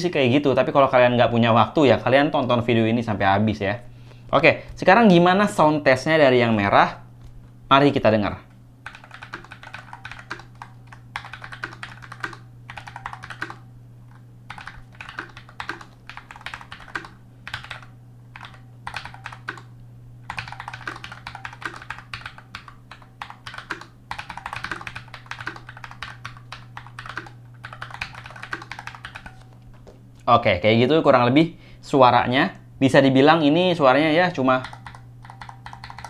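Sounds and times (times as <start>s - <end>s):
steady low hum: 0.0s - 36.0s
soft keyboard key presses: 4.6s - 5.0s, 7.2s - 7.5s.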